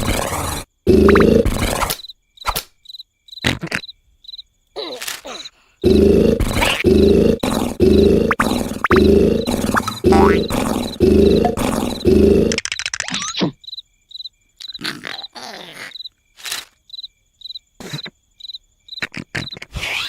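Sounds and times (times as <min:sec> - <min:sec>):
crickets chirping: 0:00.0 - 0:20.0
loud rasping snoring: 0:05.8 - 0:12.6.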